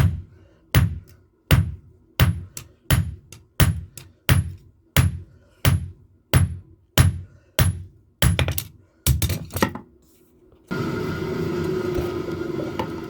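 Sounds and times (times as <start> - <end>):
hammer striking steel on anvil: 0.0 - 9.2.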